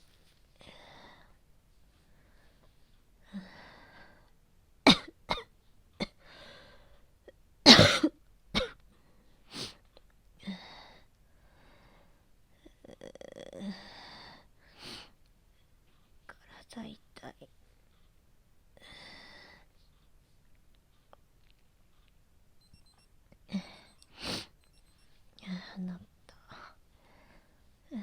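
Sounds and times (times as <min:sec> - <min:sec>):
woman coughing: 0:04.9 - 0:06.2, 0:07.7 - 0:08.8.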